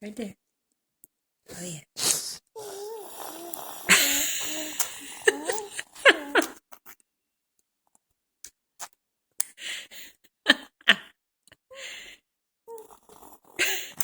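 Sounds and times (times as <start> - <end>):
baby spluttering mouth noises: 2.0 - 7.0
baby squeaky vocalising: 2.6 - 6.5.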